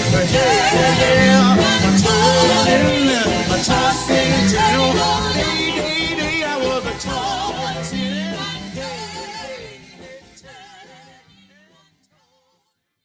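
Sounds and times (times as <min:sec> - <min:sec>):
rhythm and blues record: 0:00.0 - 0:10.4
wavering lead vocal: 0:00.0 - 0:11.7.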